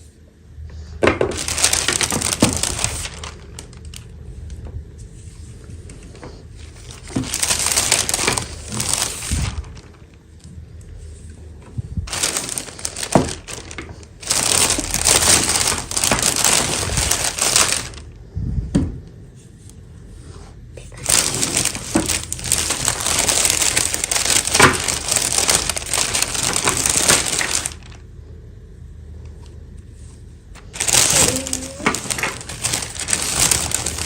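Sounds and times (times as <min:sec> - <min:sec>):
plastic packaging crinkling: 0:01.2 - 0:10.4, 0:12.0 - 0:18.2, 0:20.9 - 0:28.1, 0:30.5 - 0:34.0.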